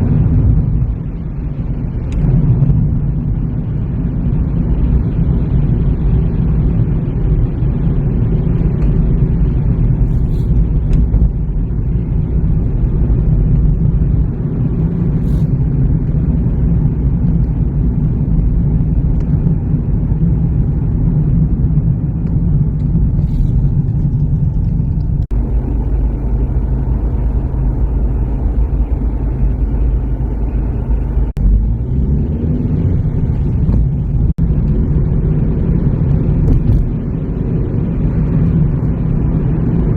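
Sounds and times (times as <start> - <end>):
car engine and road noise: 0.0 - 39.9.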